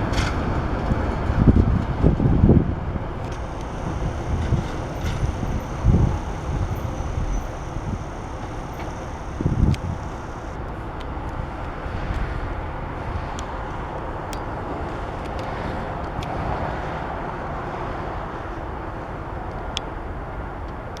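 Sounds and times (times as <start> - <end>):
diesel locomotive engine rumbling: 0.0 - 15.2
faint ticks: 3.2 - 11.4.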